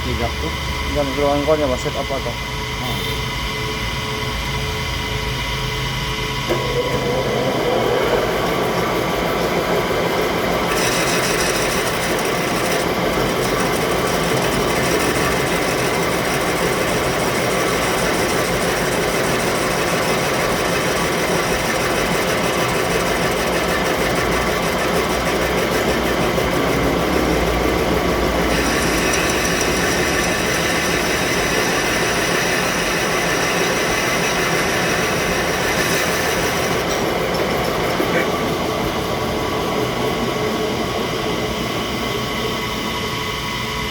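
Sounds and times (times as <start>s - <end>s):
metalworking machine running: 0.0s - 43.9s.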